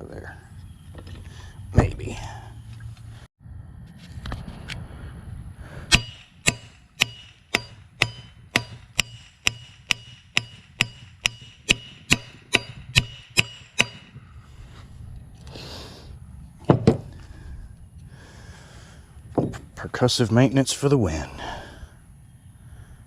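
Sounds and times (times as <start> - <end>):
hammer striking metal: 5.9 - 14.2.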